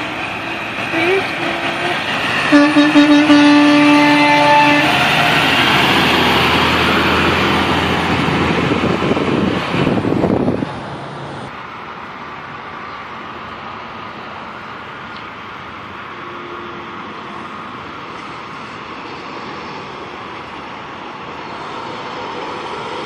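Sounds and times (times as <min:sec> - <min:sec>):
heavy truck driving past: 0:00.0 - 0:11.8
traffic noise: 0:00.0 - 0:23.0
truck air horn blowing: 0:01.0 - 0:05.0.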